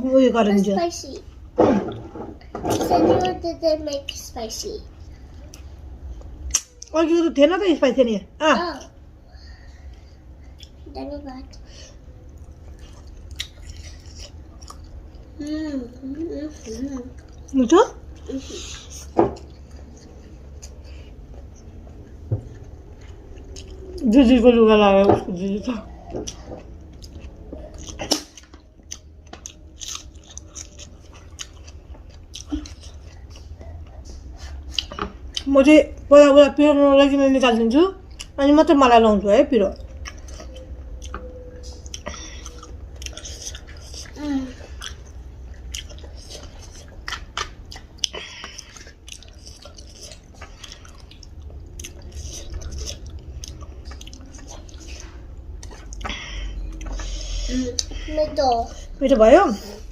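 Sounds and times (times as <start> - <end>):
person chewing food: 9.0 - 10.9, 11.6 - 15.4, 16.0 - 24.0, 25.8 - 35.5, 38.0 - 38.4, 39.7 - 58.0.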